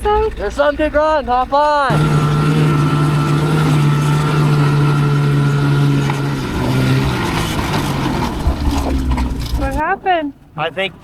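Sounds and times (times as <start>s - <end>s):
snowmobile engine running: 1.9s - 9.8s.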